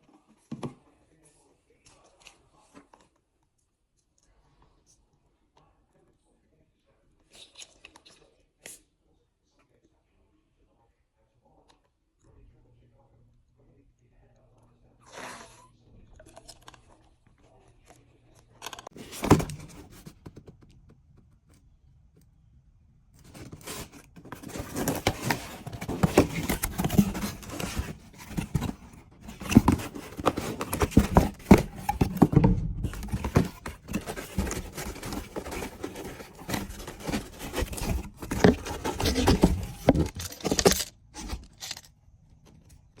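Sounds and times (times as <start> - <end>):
scraping knocking and rustling: 19.0 - 20.6, 23.2 - 41.8.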